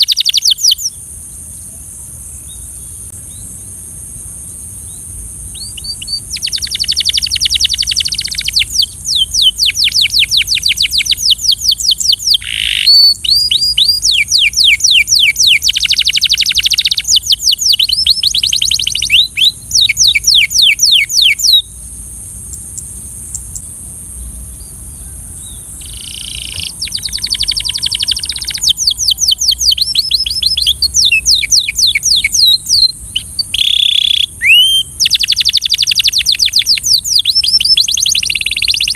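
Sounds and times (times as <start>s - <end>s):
canary singing: 0.0s - 1.0s, 5.5s - 21.7s, 25.4s - 38.9s.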